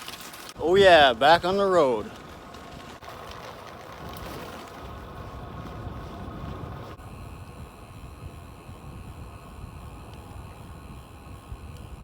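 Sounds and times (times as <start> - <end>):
bicycle tyres on road: 0.0 - 12.0
wind rushing over microphone: 3.9 - 12.0.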